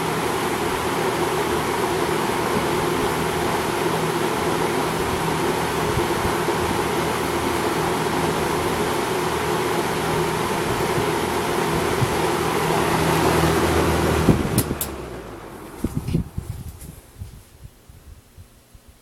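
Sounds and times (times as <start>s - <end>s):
box fan air rushing: 0.0s - 19.0s
low motor hum: 8.1s - 17.4s.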